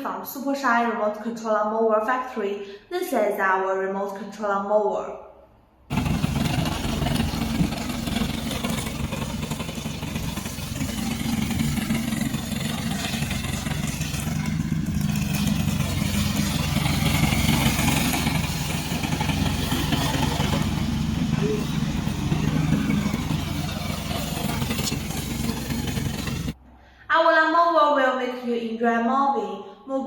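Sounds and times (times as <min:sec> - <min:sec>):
lawn mower engine running: 0:05.9 - 0:26.6.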